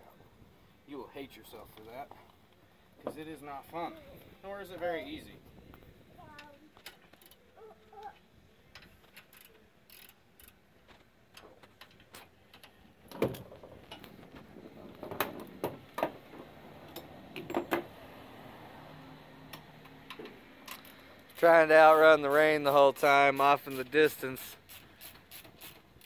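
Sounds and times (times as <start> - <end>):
tools clicking and knocking: 16.8 - 17.9, 19.5 - 21.3.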